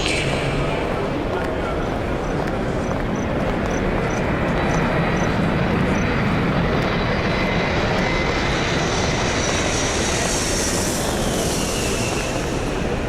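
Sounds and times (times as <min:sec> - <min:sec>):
falling whine: 0:00.0 - 0:03.1, 0:07.1 - 0:13.0
airplane engines running: 0:00.0 - 0:13.0
airport background din: 0:00.0 - 0:13.0.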